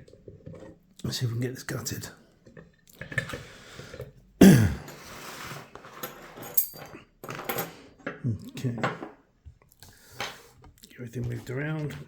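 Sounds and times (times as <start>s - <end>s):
metal tools clinking and rattling: 5.8s - 7.9s.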